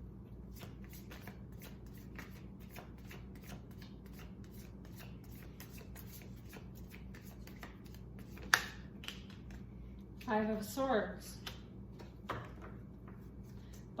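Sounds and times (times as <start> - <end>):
cards being shuffled: 0.5 - 9.6.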